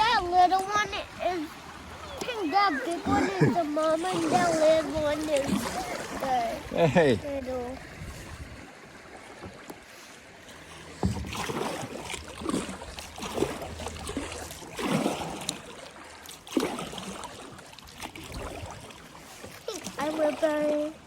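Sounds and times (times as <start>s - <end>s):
paddle strokes swishing through water: 0.0s - 21.0s.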